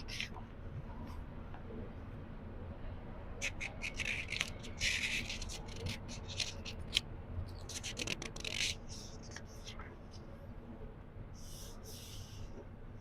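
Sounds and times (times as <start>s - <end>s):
book pages turning: 3.4s - 7.0s, 7.6s - 9.4s.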